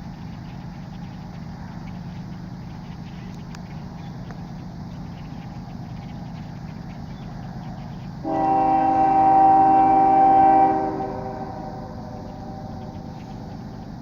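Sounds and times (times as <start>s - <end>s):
low rumble of passing train: 0.0s - 14.0s
locomotive air horn blast: 8.2s - 13.6s.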